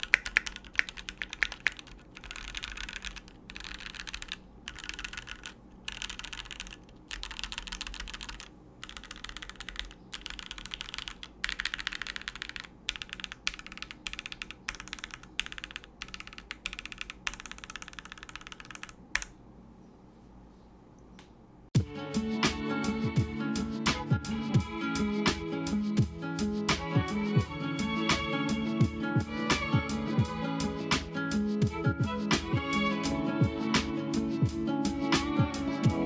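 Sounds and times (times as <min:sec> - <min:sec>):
mechanical keyboard typing: 0:00.0 - 0:19.4.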